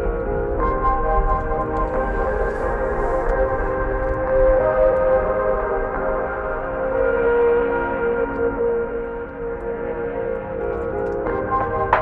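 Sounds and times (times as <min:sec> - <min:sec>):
slow ambient music: 0:00.0 - 0:12.0.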